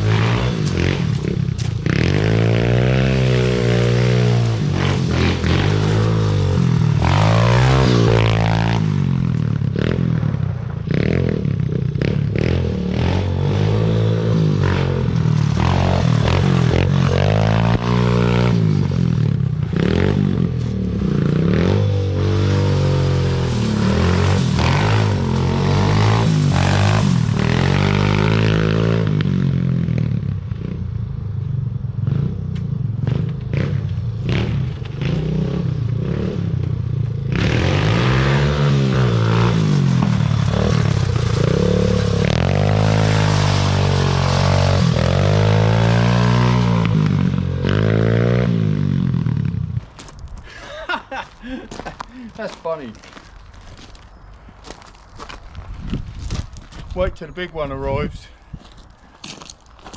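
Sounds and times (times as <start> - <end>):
small engine revving: 19.7 - 29.3, 37.3 - 49.5.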